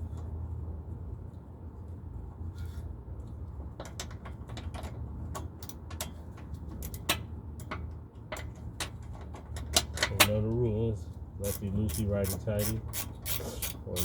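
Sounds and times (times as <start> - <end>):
hand ratchet clicking: 11.4 - 14.0.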